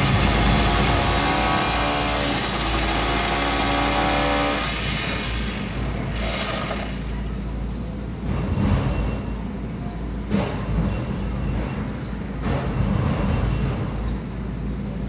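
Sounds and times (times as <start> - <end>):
heavy machine engine under load: 0.0 - 7.7.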